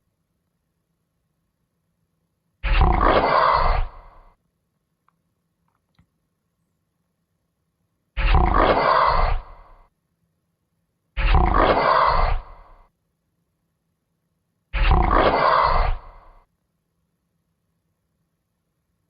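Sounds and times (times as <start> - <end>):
deep growling monster roar: 2.6 - 4.3, 8.2 - 9.8, 11.2 - 12.8, 14.8 - 16.4.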